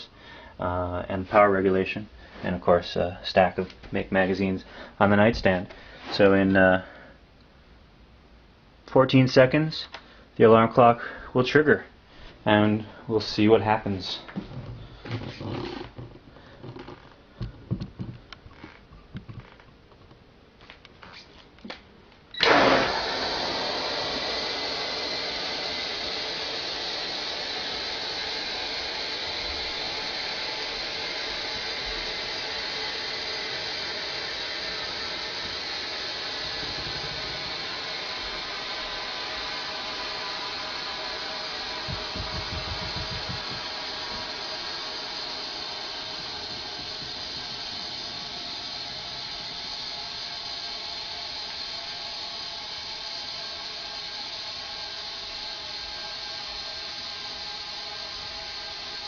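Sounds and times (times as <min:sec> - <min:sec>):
compressed air hissing with whistle: 0:22.4 - 0:59.0.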